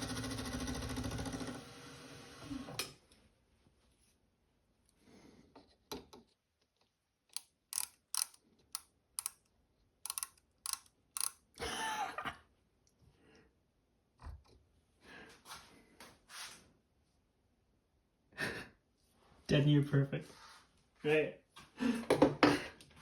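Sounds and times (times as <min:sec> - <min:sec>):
metal tools clicking and rattling: 0:07.7 - 0:08.4, 0:10.1 - 0:11.4.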